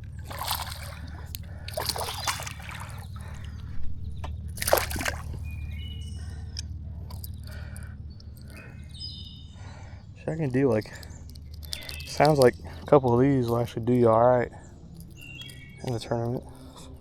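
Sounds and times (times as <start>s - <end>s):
water splashing in a creek: 0.0s - 5.6s
bird chirps: 0.0s - 17.0s
low rumble: 0.0s - 17.0s.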